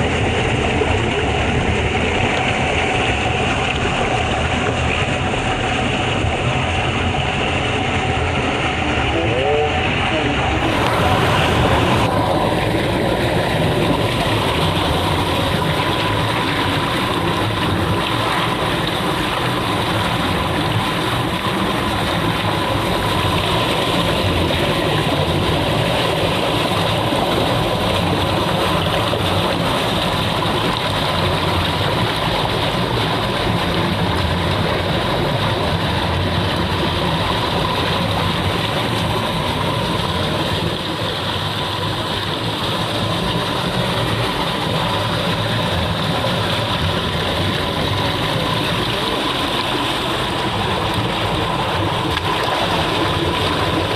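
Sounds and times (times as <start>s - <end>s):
water rushing: 0.0s - 53.9s.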